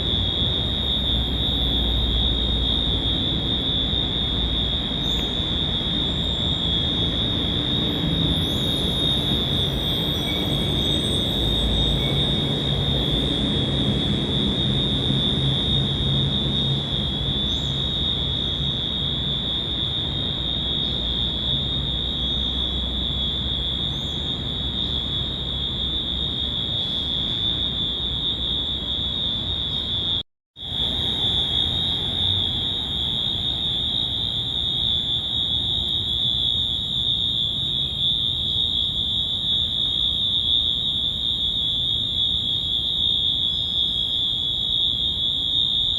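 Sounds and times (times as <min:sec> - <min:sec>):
low traffic rumble: 0:00.0 - 0:30.0
high-pitched fire alarm tone: 0:01.0 - 0:13.1.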